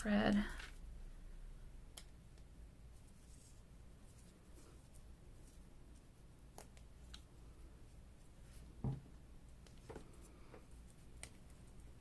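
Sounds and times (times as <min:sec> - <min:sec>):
faint taps on tabletop: 0:08.8 - 0:09.1
soft thump: 0:08.8 - 0:09.1.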